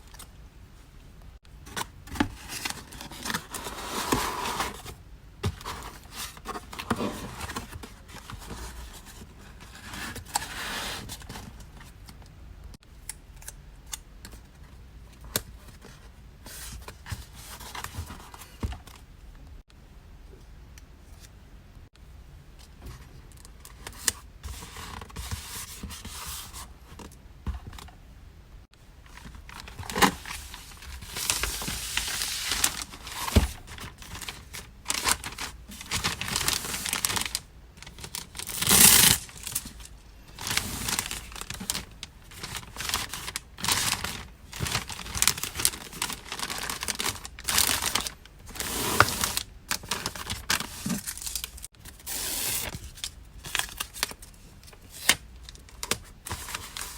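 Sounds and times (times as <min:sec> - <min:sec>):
packaging rustling and crinkling: 0:01.6 - 0:11.7, 0:29.0 - 0:56.9
packaging tearing: 0:34.9 - 0:39.7, 0:42.5 - 0:51.6.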